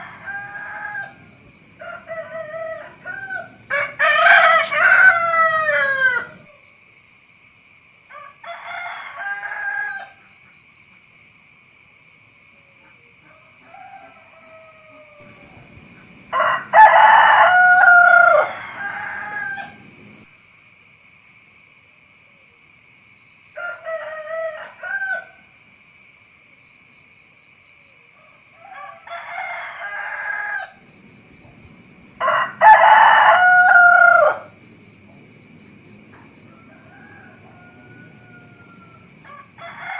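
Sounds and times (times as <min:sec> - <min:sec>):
rooster crowing: 0:00.0 - 0:06.7, 0:08.1 - 0:10.4, 0:13.2 - 0:20.3, 0:23.5 - 0:25.4, 0:28.1 - 0:30.9, 0:32.2 - 0:34.6, 0:36.1 - 0:39.9.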